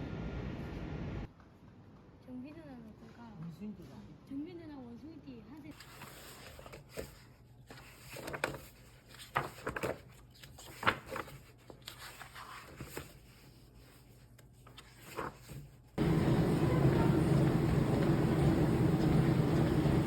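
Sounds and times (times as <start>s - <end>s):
low steady hum: 16.0s - 20.0s.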